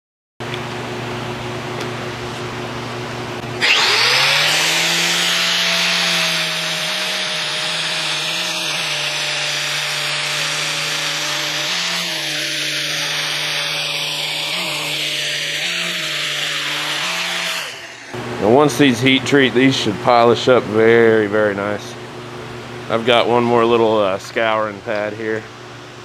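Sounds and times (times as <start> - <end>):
power tool motor running: 3.5 - 18.4.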